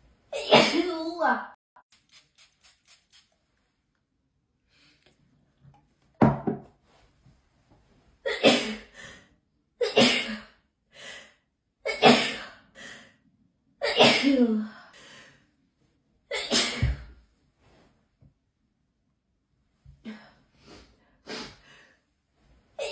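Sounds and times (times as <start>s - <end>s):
person sneezing: 16.3s - 17.2s.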